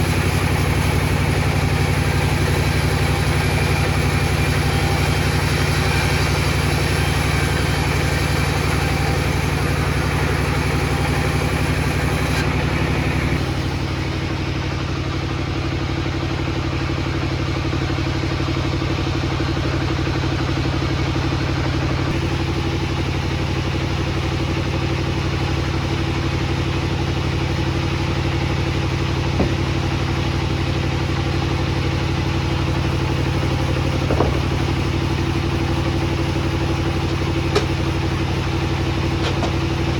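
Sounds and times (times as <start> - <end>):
table saw motor hum: 0.0 - 15.4, 21.7 - 24.1, 26.8 - 39.9.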